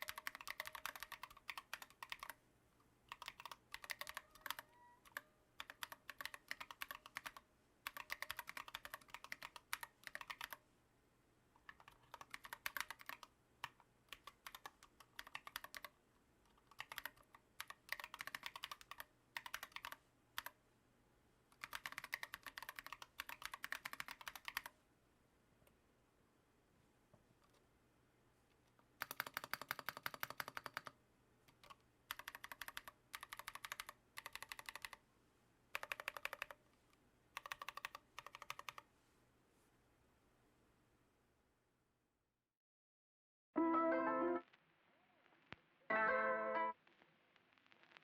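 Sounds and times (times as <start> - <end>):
mechanical keyboard typing: 0.0 - 2.4, 3.1 - 10.6, 11.6 - 15.9, 16.5 - 20.6, 21.6 - 24.8, 29.0 - 35.0, 35.7 - 36.6, 37.4 - 38.9.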